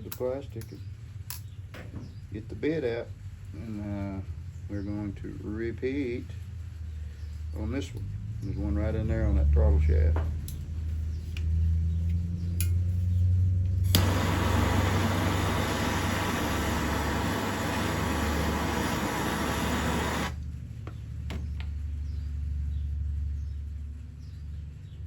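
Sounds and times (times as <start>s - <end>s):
steady low hum: 0.3s - 25.0s
gas torch hissing: 13.8s - 20.4s.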